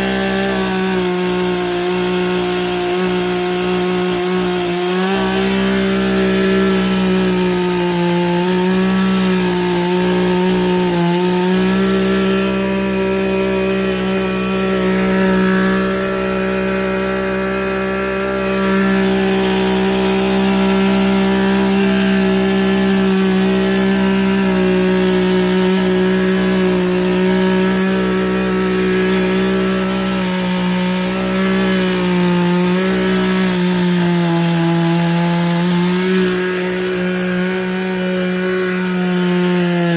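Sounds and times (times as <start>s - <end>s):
chainsaw running: 0.0s - 39.9s.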